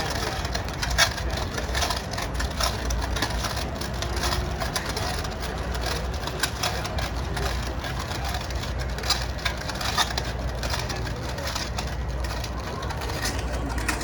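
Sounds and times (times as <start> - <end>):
construction printer humming: 1.5 - 14.0.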